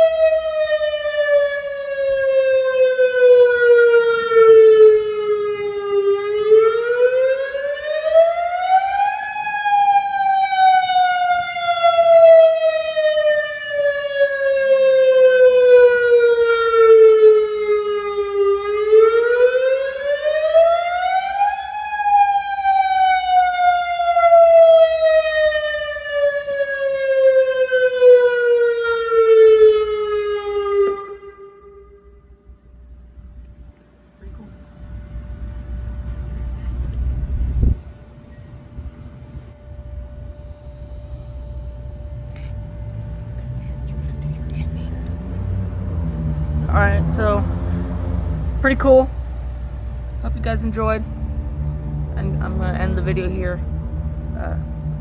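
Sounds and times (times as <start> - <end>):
warning siren wailing: 0.0 - 55.0.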